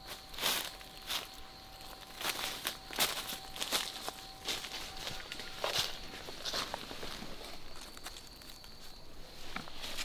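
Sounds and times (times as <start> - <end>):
faint high-pitched tone: 0.0 - 6.2
rustles and crunches outdoors: 0.0 - 10.0.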